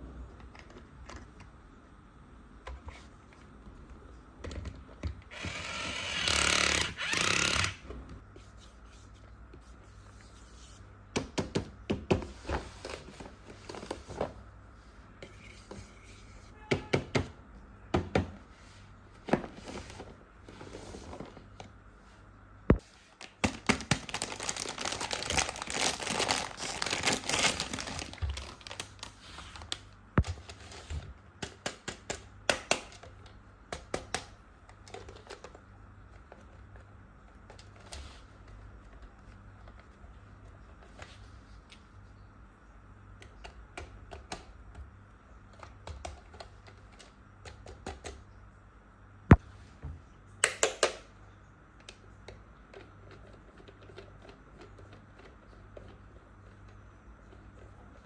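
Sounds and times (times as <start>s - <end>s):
packaging rustling: 23.1s - 29.7s
packaging crinkling: 23.2s - 29.7s.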